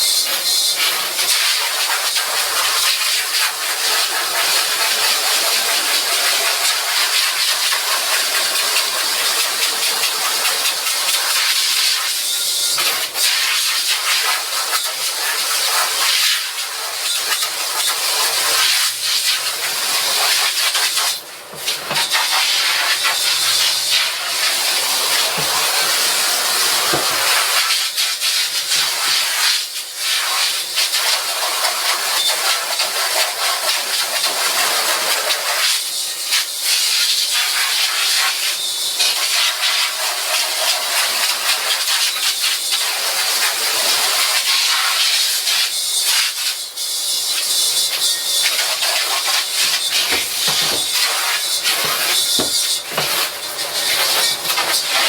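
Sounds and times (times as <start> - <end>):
water jet hissing: 0.0 - 29.5, 47.4 - 55.0.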